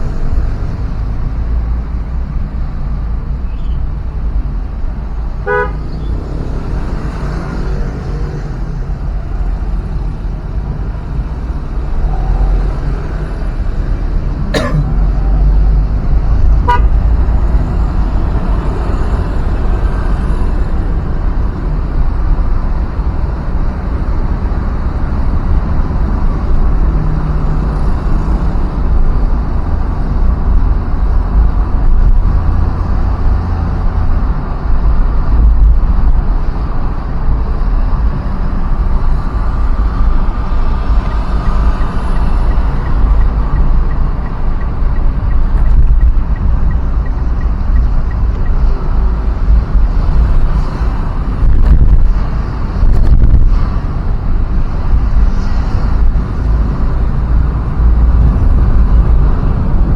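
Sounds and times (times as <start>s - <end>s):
road traffic rumble: 0.0s - 59.9s
vehicle horn tooting: 5.4s - 5.8s, 16.6s - 17.0s.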